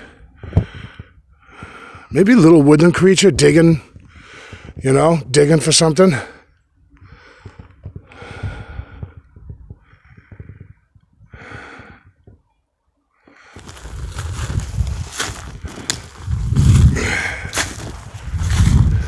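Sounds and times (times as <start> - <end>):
person breathing hard: 0.0 - 2.1, 4.0 - 4.8, 6.2 - 12.4, 13.2 - 14.6, 15.4 - 19.0
snowshoe steps crunching in snow: 13.5 - 19.0.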